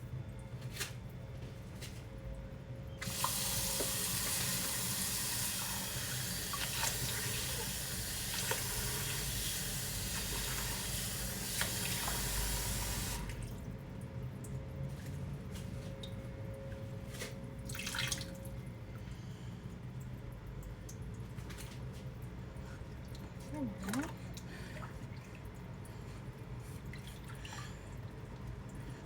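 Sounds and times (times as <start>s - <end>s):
water running from a tap: 3.0s - 13.7s
small splashes and clicks: 13.2s - 29.0s.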